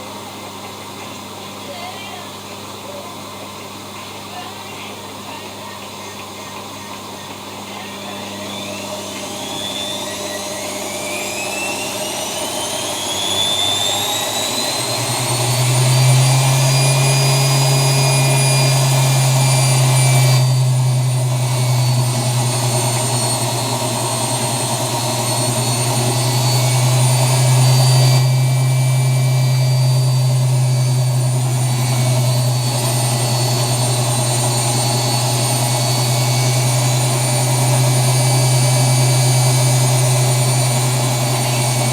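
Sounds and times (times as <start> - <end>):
washing machine spinning: 0.0 - 41.9.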